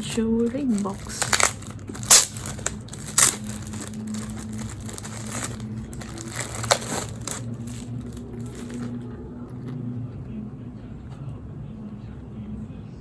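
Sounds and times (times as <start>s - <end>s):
plastic packaging rustling: 0.0s - 9.2s
steady low hum: 0.0s - 13.0s.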